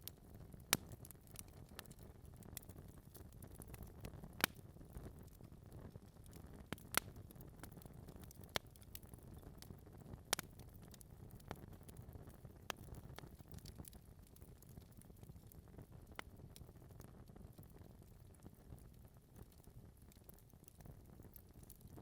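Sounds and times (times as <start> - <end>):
logs crackling and popping: 0.0 - 22.0
fire hissing and rumbling: 0.1 - 14.3.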